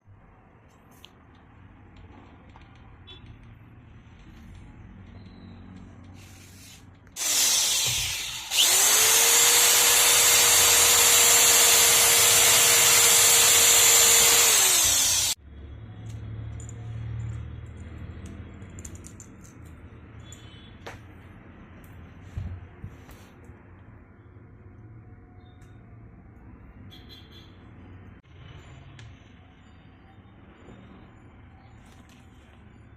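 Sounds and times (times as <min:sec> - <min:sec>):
rotary tool cutting circuit board: 0:07.2 - 0:15.4.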